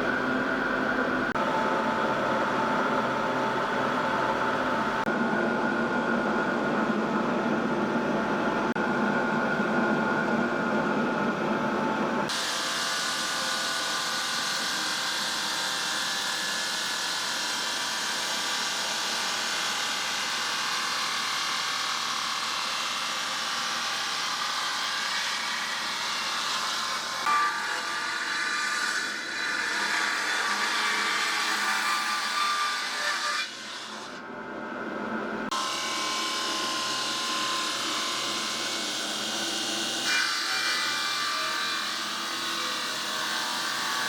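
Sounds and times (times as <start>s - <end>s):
stone-cutting saw running: 12.3s - 34.2s, 35.5s - 44.0s.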